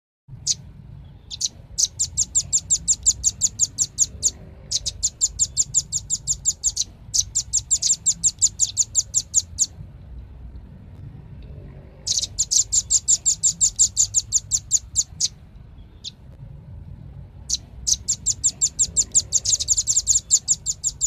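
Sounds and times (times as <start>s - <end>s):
bird calling sharp high chips: 1.2s - 9.7s, 17.5s - 21.0s.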